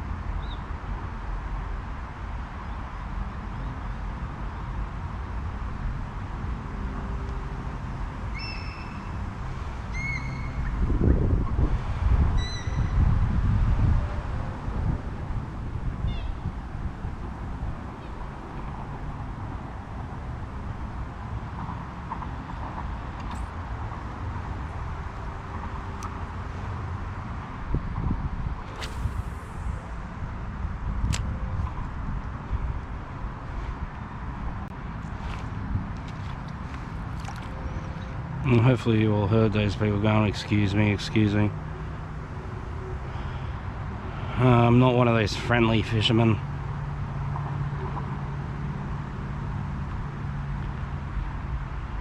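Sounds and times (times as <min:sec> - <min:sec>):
steady low rumble: 0:03.9 - 0:52.0
bird calls: 0:08.3 - 0:09.2, 0:09.8 - 0:10.9, 0:12.4 - 0:13.0.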